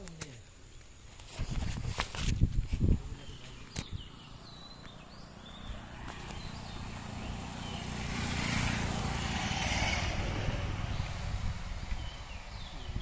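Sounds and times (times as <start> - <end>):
motor vehicle passing by: 4.0 - 12.8.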